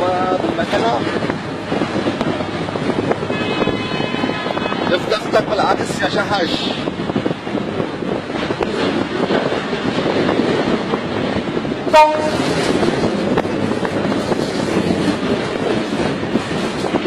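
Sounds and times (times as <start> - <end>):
wind and engine rumble: 0.0 - 17.0
short loud horn toot: 11.9 - 12.4.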